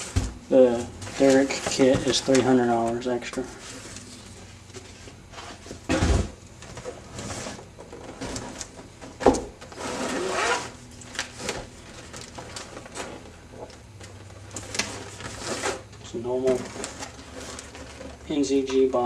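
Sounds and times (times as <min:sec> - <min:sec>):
cardboard packaging rustling: 0:00.0 - 0:05.8, 0:09.7 - 0:18.7.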